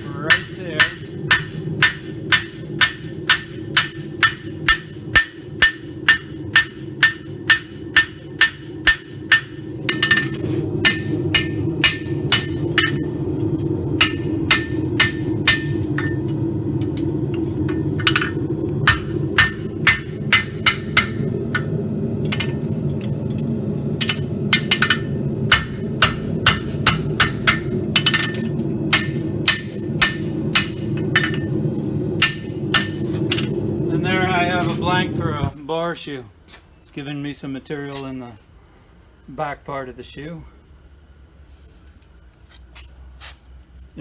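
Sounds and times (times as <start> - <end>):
anvil ringing: 0.0 - 13.2, 14.0 - 33.9
hammer striking steel on anvil: 0.0 - 13.2, 14.0 - 33.8
low rushing noise: 0.0 - 35.6.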